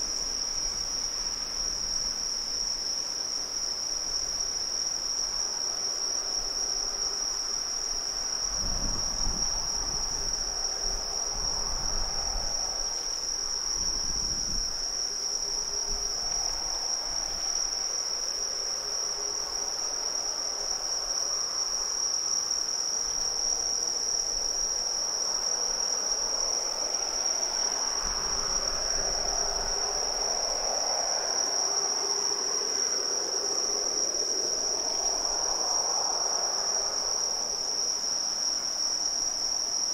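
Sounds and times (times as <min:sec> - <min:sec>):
insects trilling: 0:00.0 - 0:39.9.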